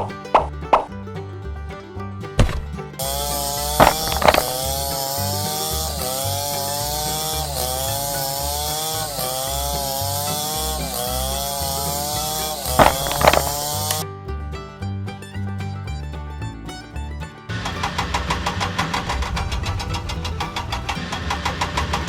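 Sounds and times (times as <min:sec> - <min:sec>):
small motor tool whining: 0:03.0 - 0:14.0.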